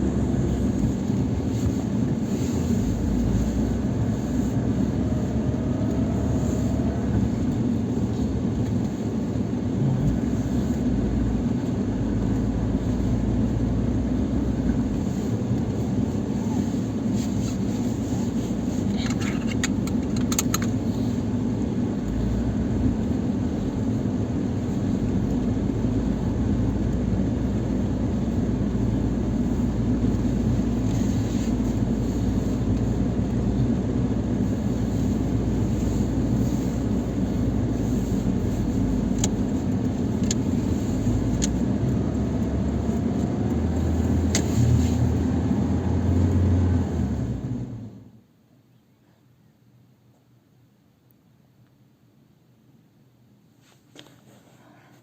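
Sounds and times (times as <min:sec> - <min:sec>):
car engine running: 0:00.0 - 0:47.9
sharp clicks: 0:19.0 - 0:20.8.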